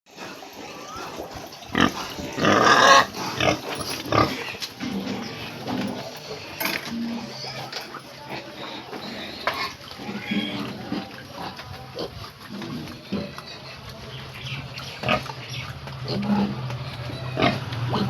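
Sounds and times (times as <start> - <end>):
pig squealing: 0.1 - 18.0
pigs grunting: 0.1 - 18.0.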